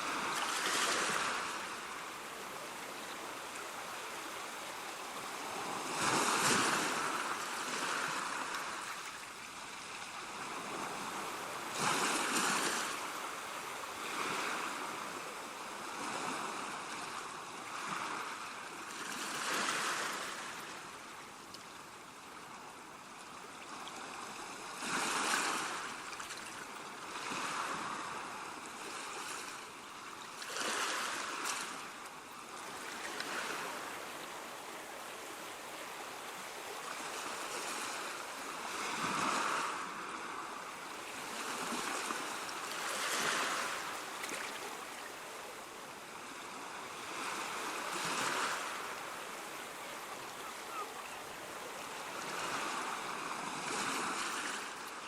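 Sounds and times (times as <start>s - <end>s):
sea waves breaking on shore: 0.0s - 55.0s.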